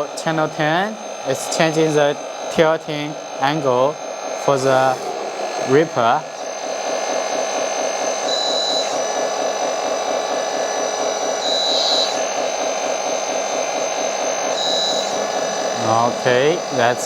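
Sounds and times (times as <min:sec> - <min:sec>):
electric hydraulic pump humming: 0:00.0 - 0:17.0
high-pitched whine: 0:00.0 - 0:17.0.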